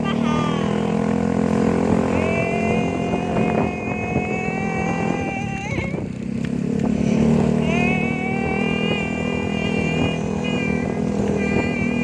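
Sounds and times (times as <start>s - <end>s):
constant whine: 0.0s - 12.0s
scooter engine cruising: 0.0s - 12.0s.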